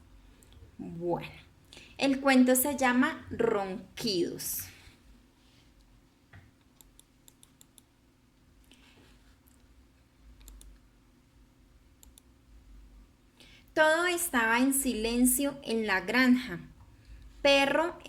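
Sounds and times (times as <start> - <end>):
faint clicks: 10.4 - 10.8, 12.0 - 12.3.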